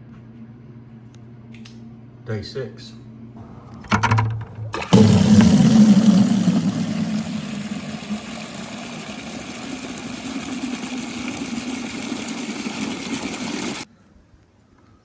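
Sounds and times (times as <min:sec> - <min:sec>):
engine running steadily: 0:03.4 - 0:13.9.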